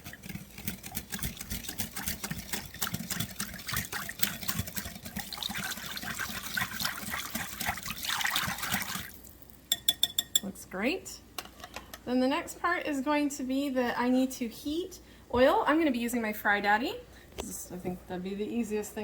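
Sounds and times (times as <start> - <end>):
whisk clicking against cup: 0.0 - 9.1
liquid sloshing: 0.0 - 9.5.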